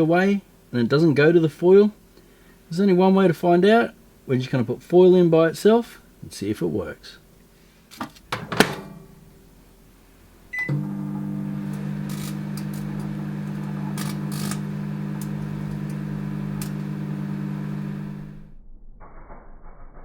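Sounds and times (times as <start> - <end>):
microwave door shutting: 8.4 - 9.0
microwave oven humming: 10.1 - 18.5.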